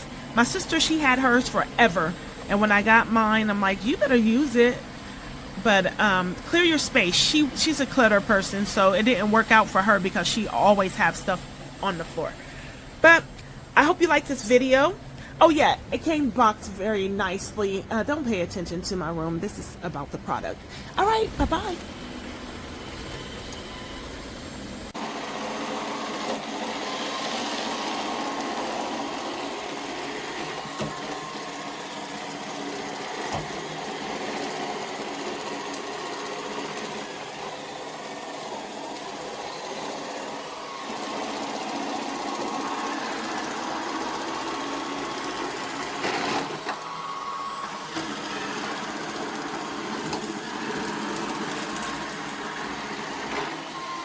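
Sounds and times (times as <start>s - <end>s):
robot vacuum motor whirring: 22.7s - 54.0s.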